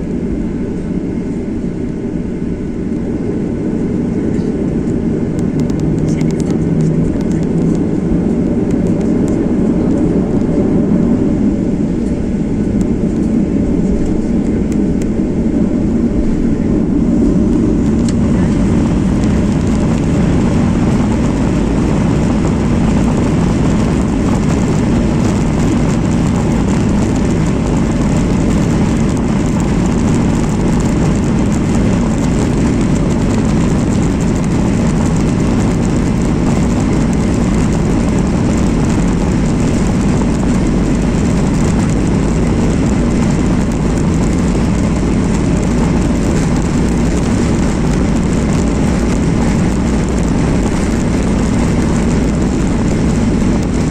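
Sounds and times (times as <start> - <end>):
airliner cabin engine rush: 0.0 - 53.9.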